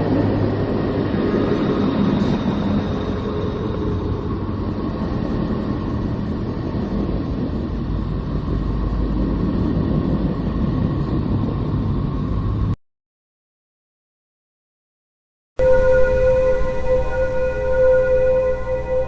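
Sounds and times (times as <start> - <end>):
low rumbling drone: 0.0 - 12.8, 15.6 - 19.0
faint held tones: 15.6 - 19.0.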